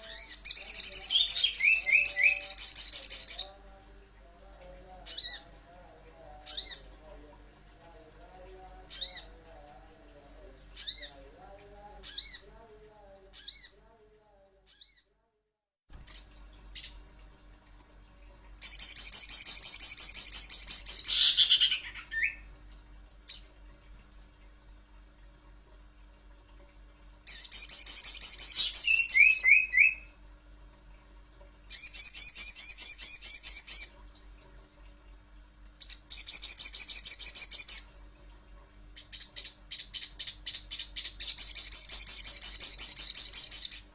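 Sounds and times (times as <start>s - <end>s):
songbirds chirping and trilling: 0.0s - 13.8s, 18.6s - 22.6s, 27.3s - 30.1s
faint steady hum: 0.0s - 43.9s.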